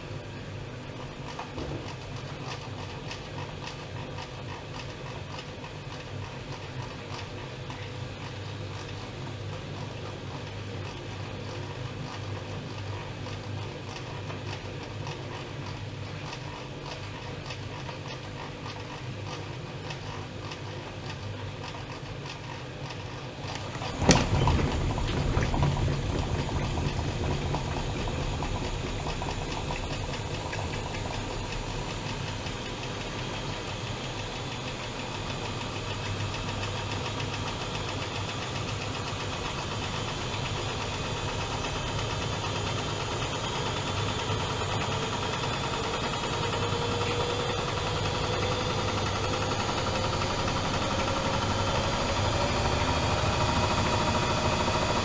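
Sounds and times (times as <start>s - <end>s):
washing machine humming: 22.8s - 55.0s.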